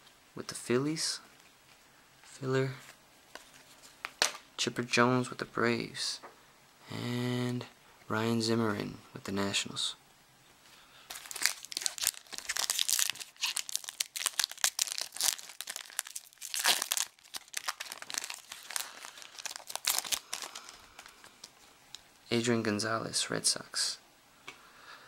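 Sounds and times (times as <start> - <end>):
foil wrapper crinkling and tearing: 11.1 - 22.0.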